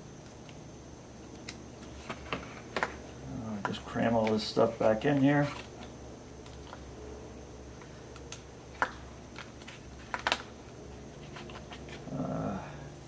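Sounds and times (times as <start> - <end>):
low steady hum: 0.0 - 13.0
clicks and rustles of wires: 7.8 - 10.5.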